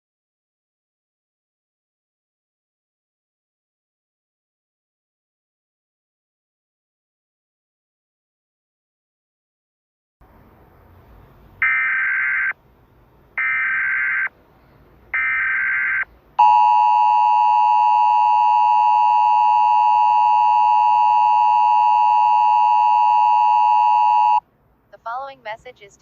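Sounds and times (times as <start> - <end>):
steady two-tone attention signal: 16.4 - 24.4.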